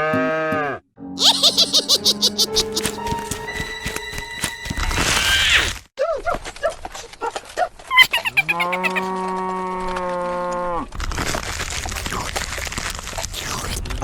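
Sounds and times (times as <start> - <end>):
short squeaky chirps: 4.7 - 5.8.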